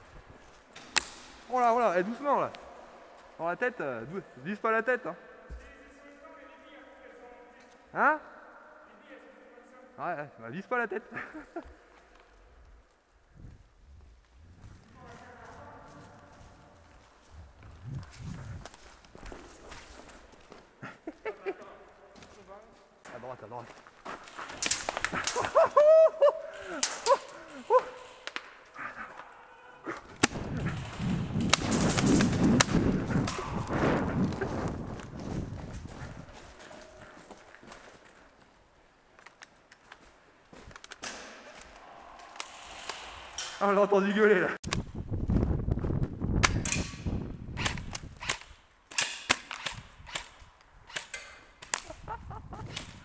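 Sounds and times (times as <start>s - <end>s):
hurried footsteps: 11.6s - 25.7s, 27.3s - 38.6s
person yelping: 25.2s - 28.2s
gear rustling: 30.0s - 43.8s.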